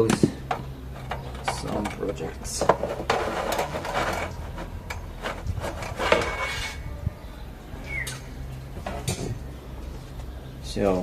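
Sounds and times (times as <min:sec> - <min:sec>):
metal parts and tools clinking: 0:00.0 - 0:06.9.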